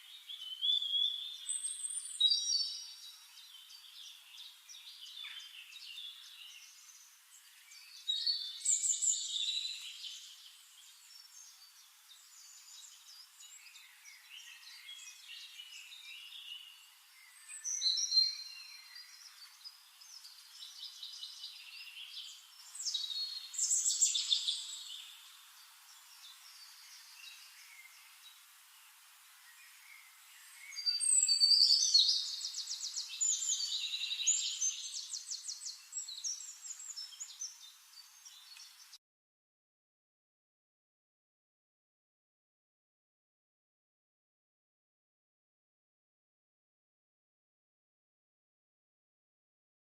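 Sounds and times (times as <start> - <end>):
birds chirping and warbling: 0.0 - 39.0
bird trill: 30.7 - 37.3.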